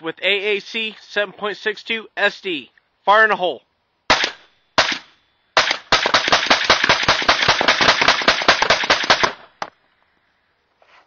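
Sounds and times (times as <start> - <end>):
suppressed rifle shots: 4.1 - 9.7.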